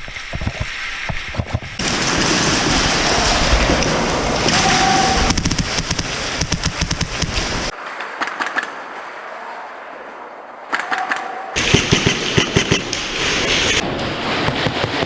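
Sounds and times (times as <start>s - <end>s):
airsoft guns firing: 10.7s - 13.2s.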